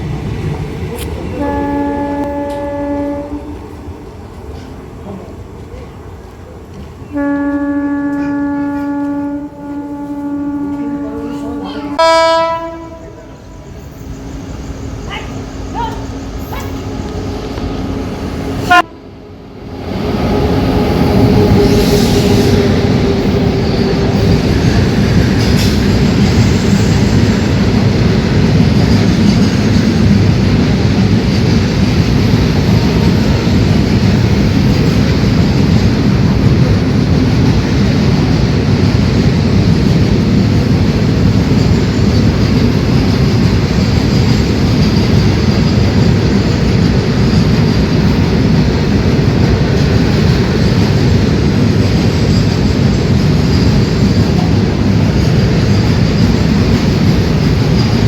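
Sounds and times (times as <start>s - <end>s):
train wheels rumbling on rails: 0.0s - 58.0s
train horn: 1.4s - 3.6s, 7.1s - 13.5s, 18.6s - 19.1s, 20.3s - 24.3s.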